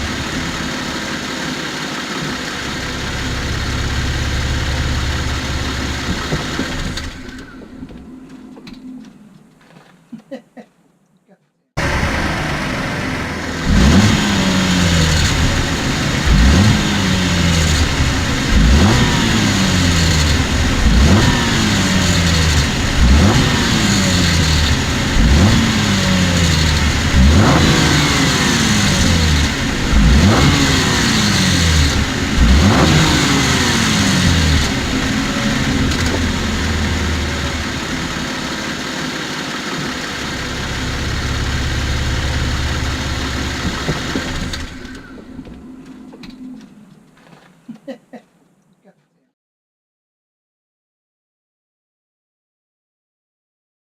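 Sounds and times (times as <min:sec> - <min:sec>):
car engine revving: 0:00.0 - 0:08.3, 0:11.8 - 0:46.5
car engine idling: 0:00.0 - 0:08.8, 0:11.8 - 0:47.1.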